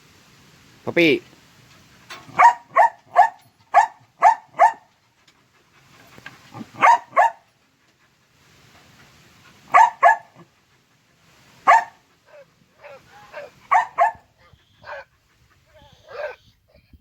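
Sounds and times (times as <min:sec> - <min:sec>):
dog barking: 0:02.3 - 0:04.9, 0:06.6 - 0:07.5, 0:09.7 - 0:10.4, 0:11.6 - 0:15.1.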